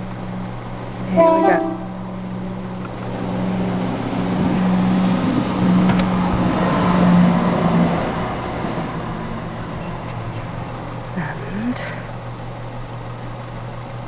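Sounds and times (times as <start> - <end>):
steady low hum: 0.0 - 6.5, 8.0 - 14.0
train passing: 0.0 - 11.8.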